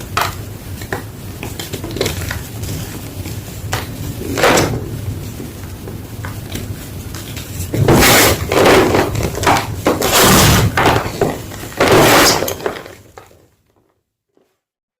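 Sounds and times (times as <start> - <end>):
chalk block crunching: 6.2 - 13.0.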